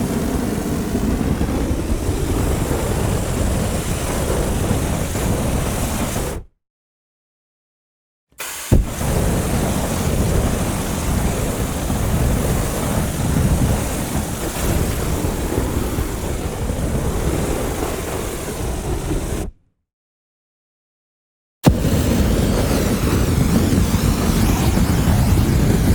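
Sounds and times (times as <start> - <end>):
large fire roaring: 0.0 - 6.4, 8.8 - 19.5, 21.7 - 25.9
sharp thump: 8.7 - 9.0.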